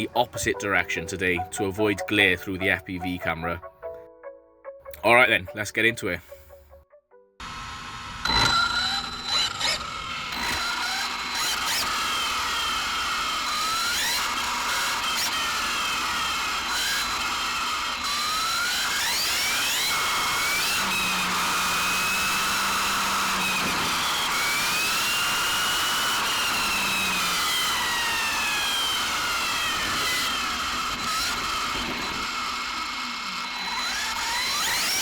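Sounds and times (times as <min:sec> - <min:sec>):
electric motor whining: 0:07.4 - 0:35.0.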